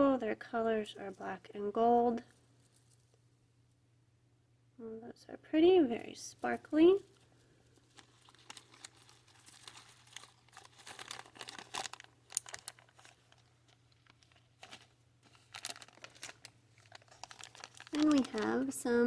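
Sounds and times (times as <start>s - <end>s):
packaging crinkling and rustling: 6.6s - 19.0s.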